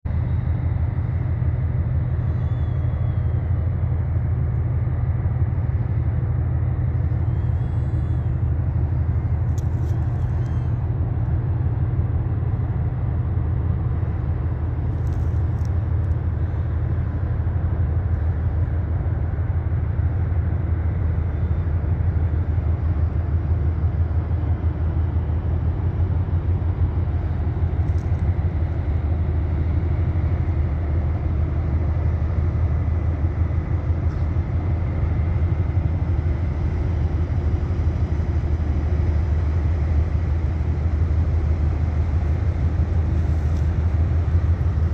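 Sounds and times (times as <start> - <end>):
ship engine drone: 0.1 - 44.9
faint bird chirps: 2.2 - 3.5, 7.1 - 8.5.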